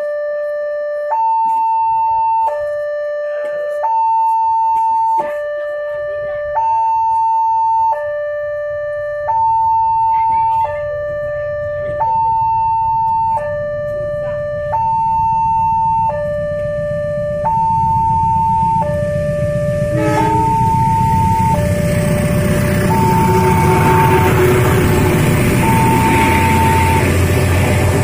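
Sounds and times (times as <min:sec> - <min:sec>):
two-tone level crossing siren: 0:00.0 - 0:28.0
low rumble: 0:14.0 - 0:28.0.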